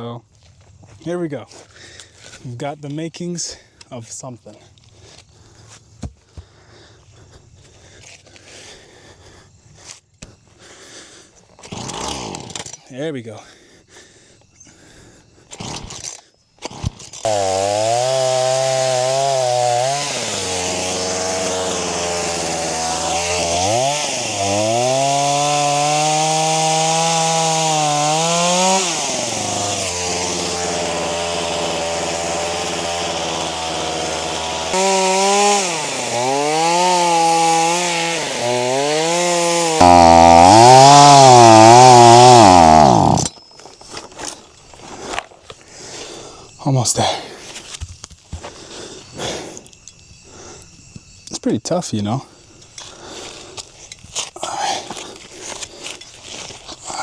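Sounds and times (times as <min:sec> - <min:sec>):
chainsaw cutting through log: 0:11.7 - 0:12.7, 0:16.6 - 0:43.3.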